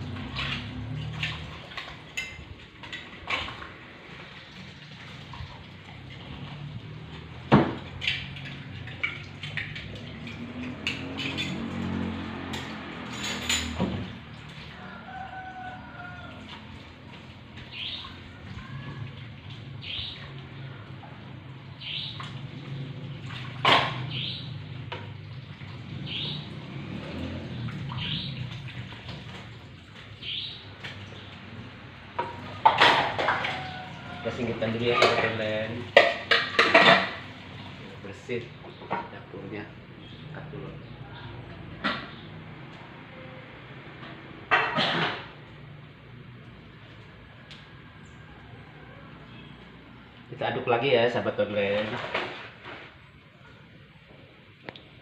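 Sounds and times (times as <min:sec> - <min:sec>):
metal cookware clanking: 0:07.6 - 0:11.8, 0:12.4 - 0:14.0, 0:32.1 - 0:37.4
bird chirping: 0:17.6 - 0:18.3, 0:19.8 - 0:20.3, 0:21.7 - 0:22.2, 0:24.1 - 0:24.6, 0:26.0 - 0:26.5, 0:30.2 - 0:31.4.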